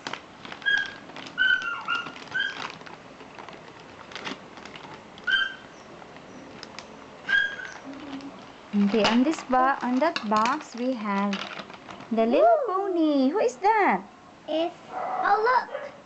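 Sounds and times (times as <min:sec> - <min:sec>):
handling clicks and rustles: 0:00.0 - 0:12.2
small animal chirping: 0:00.6 - 0:02.6, 0:05.3 - 0:06.4, 0:07.3 - 0:08.4.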